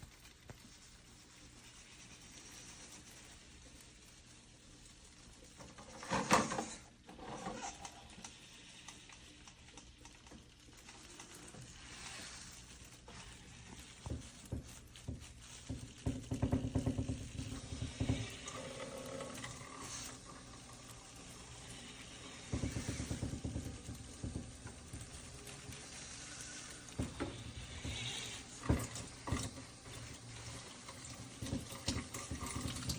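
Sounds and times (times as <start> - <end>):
dishes knocking and clattering: 16.0 - 18.6, 31.0 - 32.9.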